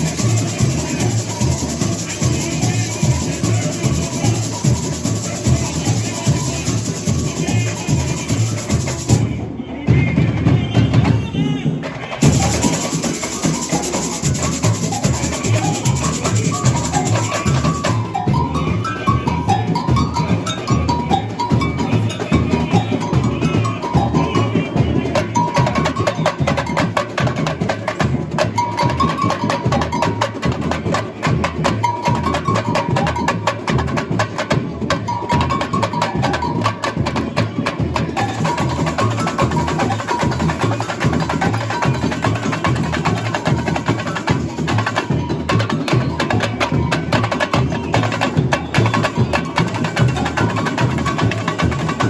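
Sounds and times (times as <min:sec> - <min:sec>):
drum section playing samba beat: 0:00.0 - 0:52.0
high held tone: 0:12.2 - 0:26.5.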